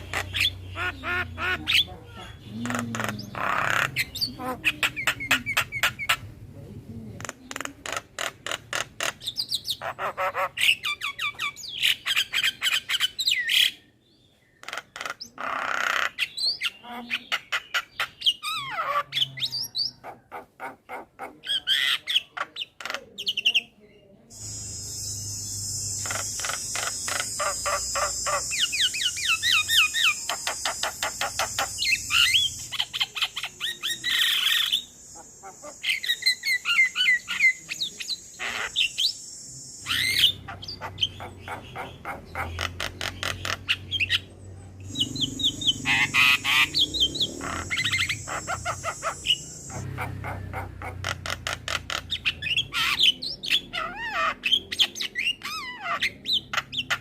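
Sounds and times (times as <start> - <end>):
myna clicking and chattering: 2.4 - 6.2, 7.2 - 9.4, 24.3 - 39.0.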